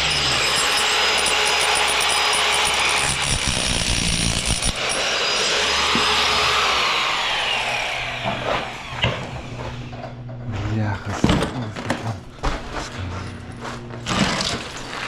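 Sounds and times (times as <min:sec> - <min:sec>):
power tool running: 0:00.0 - 0:10.2.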